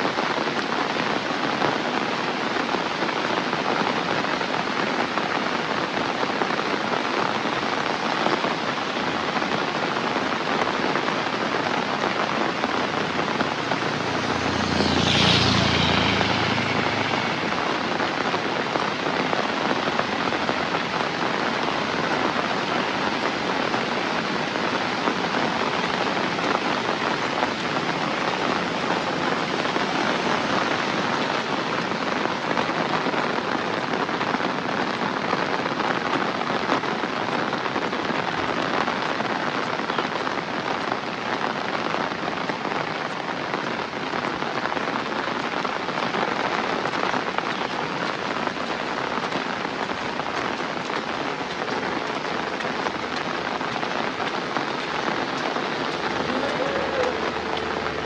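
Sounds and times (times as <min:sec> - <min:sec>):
heavy rain falling: 0:00.0 - 0:58.0
loud rumble: 0:55.9 - 0:58.0.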